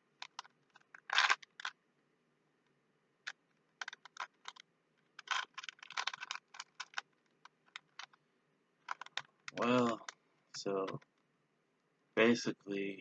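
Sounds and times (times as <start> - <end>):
plastic puzzle cube clicking: 0.2 - 1.8, 3.2 - 8.2, 8.8 - 11.1.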